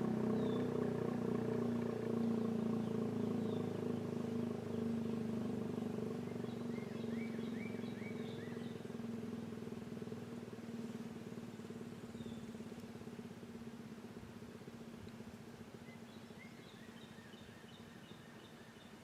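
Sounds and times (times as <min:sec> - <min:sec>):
bird chirping: 0:02.2 - 0:05.0, 0:06.2 - 0:08.9.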